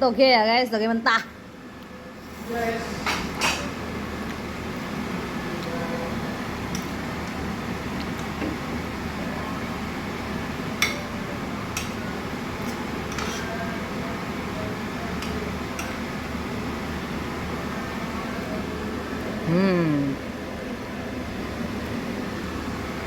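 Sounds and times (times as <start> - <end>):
steady background hum: 0.0 - 23.0
utensils clinking on plate: 12.6 - 13.5.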